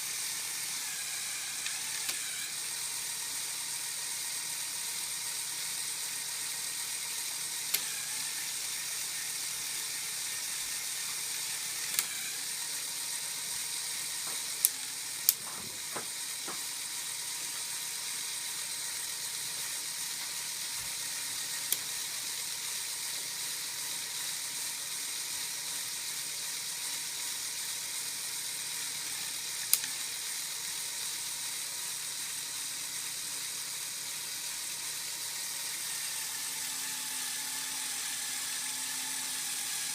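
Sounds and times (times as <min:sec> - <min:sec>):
toy gear train whirring: 0:00.0 - 0:39.9
sharp clicks: 0:29.6 - 0:30.0.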